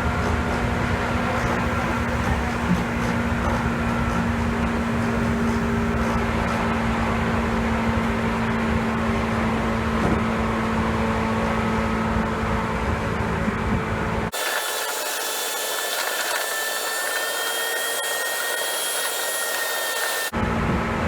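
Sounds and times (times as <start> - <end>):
constant droning hum: 0.0 - 14.4.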